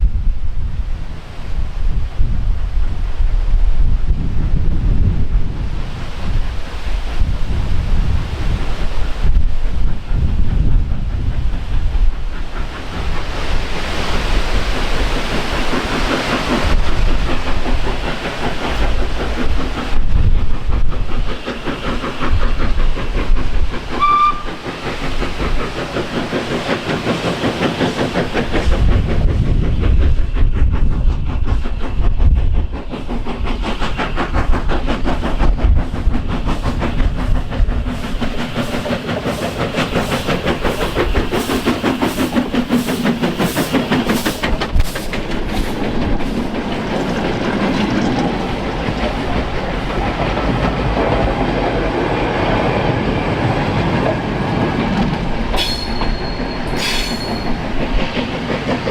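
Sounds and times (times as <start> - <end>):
steam locomotive hiss and rumble: 0.0 - 58.9
train wheels rhythmic beat: 6.0 - 58.9
train whistle toot: 24.0 - 24.5.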